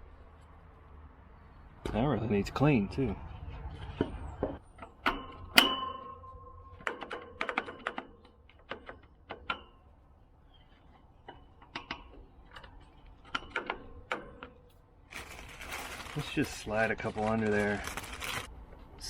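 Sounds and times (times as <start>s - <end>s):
metal clicks and taps: 4.5s - 9.8s, 11.2s - 14.8s
ringing metal clank: 5.1s - 7.4s.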